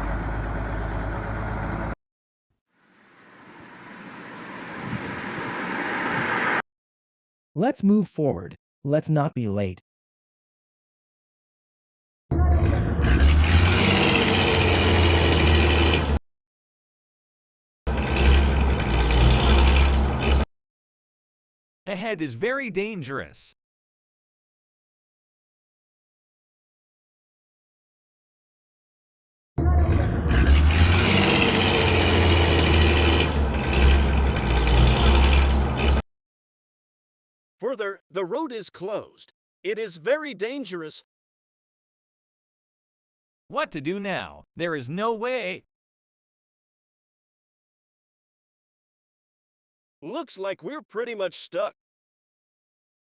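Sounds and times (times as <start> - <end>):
truck engine rumbling: 0.0 - 2.0, 2.9 - 6.6, 12.5 - 16.2, 17.9 - 20.4, 29.6 - 36.0.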